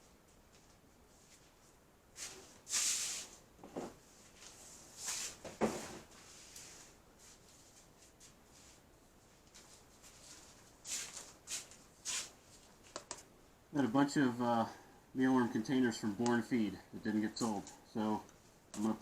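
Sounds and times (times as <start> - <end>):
rustling of handled things: 0.0 - 13.2.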